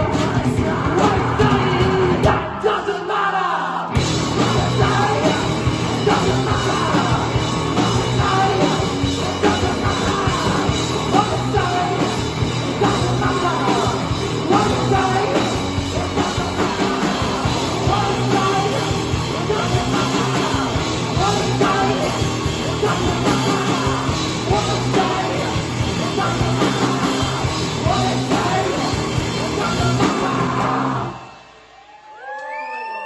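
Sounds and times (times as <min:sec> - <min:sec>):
live rock band playing: 0:00.0 - 0:02.8, 0:03.9 - 0:31.7
person singing: 0:00.0 - 0:31.3.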